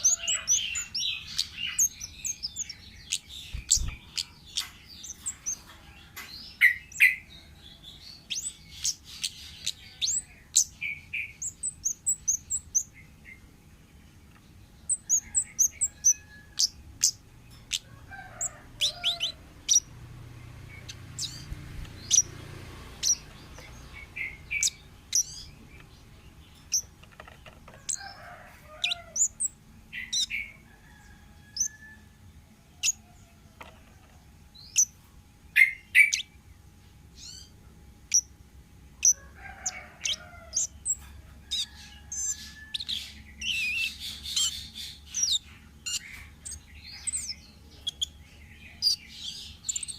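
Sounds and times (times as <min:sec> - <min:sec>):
thrush chirping and trilling: 0:00.0 - 0:05.7, 0:08.0 - 0:13.0, 0:14.8 - 0:27.0, 0:27.8 - 0:30.6.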